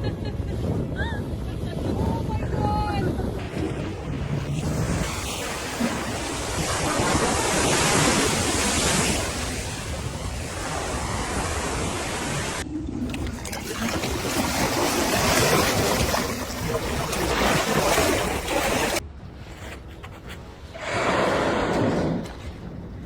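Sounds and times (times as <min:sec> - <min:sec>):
wind buffeting microphone: 0:00.0 - 0:19.0
sea surf rushing: 0:03.4 - 0:19.0.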